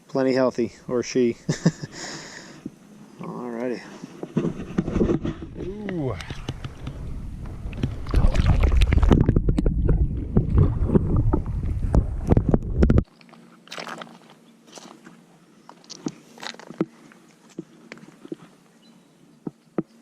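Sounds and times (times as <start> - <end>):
water splashing: 6.6 - 15.0.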